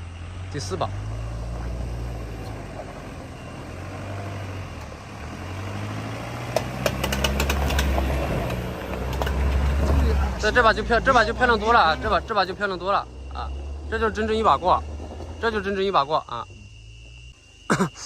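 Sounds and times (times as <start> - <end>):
car engine running: 0.0 - 15.8
sharp clicks and knocks: 6.5 - 9.6.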